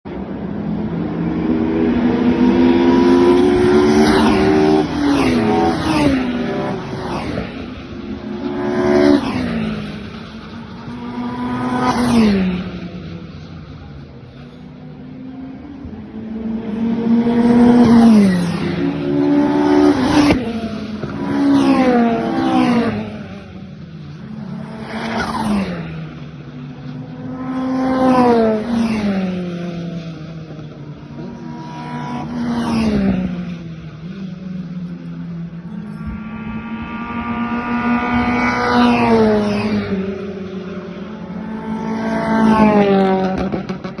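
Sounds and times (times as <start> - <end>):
race car engines running loud: 0.1 - 44.0
steady engine note: 34.8 - 41.0.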